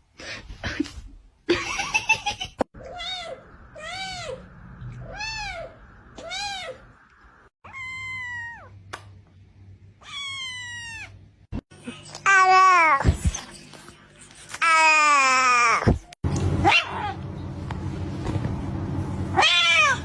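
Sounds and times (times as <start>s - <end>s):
cat meowing: 5.0s - 6.8s, 7.6s - 8.8s, 10.0s - 11.2s.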